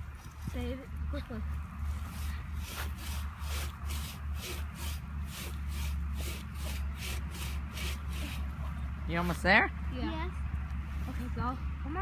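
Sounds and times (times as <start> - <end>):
hand saw cutting wood: 2.1 - 8.6.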